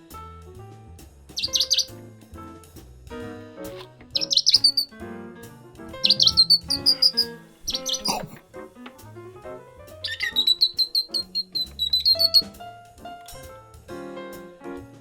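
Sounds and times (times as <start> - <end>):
background music with a beat: 0.0 - 7.1
high bird chirping: 1.4 - 2.0, 4.1 - 4.9, 6.0 - 8.4, 10.0 - 12.6.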